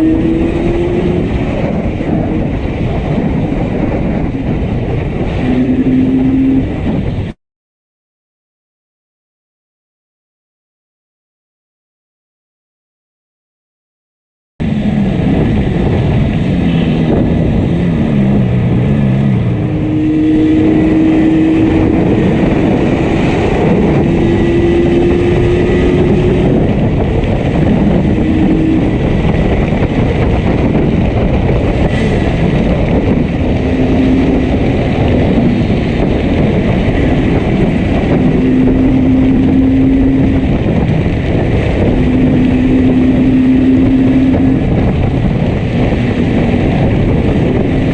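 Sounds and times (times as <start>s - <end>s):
steady rush of noise: 0.0s - 7.4s, 14.6s - 47.9s
misfiring motorcycle engine: 14.6s - 47.9s.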